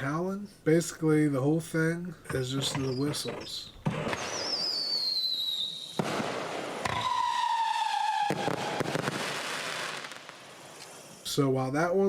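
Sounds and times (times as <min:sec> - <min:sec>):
firework whistling: 0:02.4 - 0:11.3
firework bang: 0:03.8 - 0:10.6.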